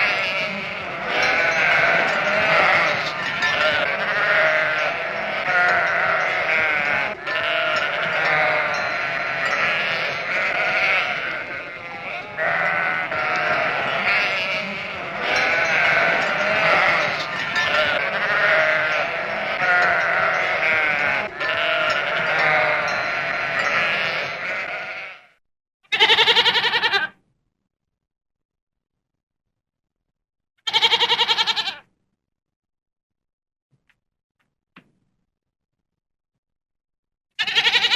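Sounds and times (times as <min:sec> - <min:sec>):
goats bleating: 0:00.0 - 0:25.3, 0:25.9 - 0:27.1, 0:30.7 - 0:31.8, 0:37.4 - 0:37.9.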